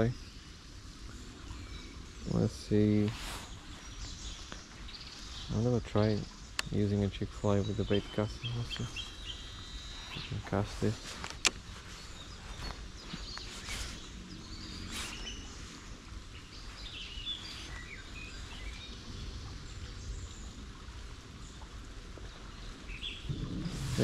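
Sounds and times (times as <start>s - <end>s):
low outdoor rumble: 0.0s - 24.0s
small birds chirping: 0.0s - 24.0s
faint ticks: 6.5s - 6.8s.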